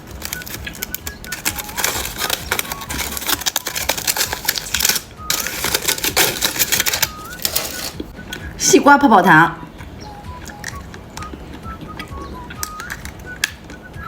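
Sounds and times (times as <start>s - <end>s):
candy crunching being eaten: 0.0s - 8.2s
candy wrapper crackling: 0.0s - 8.2s, 10.4s - 13.6s.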